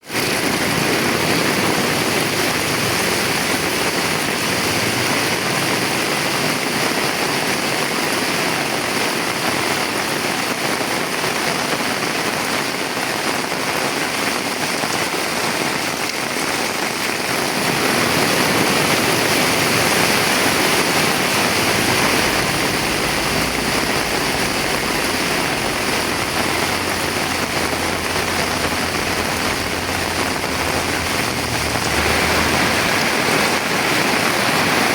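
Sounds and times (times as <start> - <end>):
heavy rain pouring: 0.0 - 34.9
low rumble: 20.5 - 33.8.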